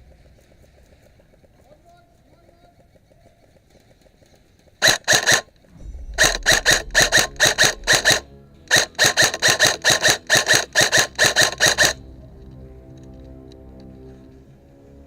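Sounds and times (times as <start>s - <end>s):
electronic alarm beeping: 4.8s - 12.0s.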